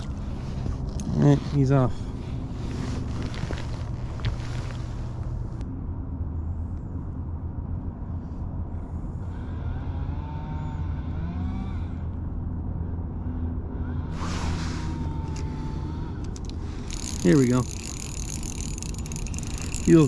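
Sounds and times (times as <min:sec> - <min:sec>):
low outdoor rumble: 0:00.0 - 0:20.0
short whoosh: 0:14.2 - 0:15.2.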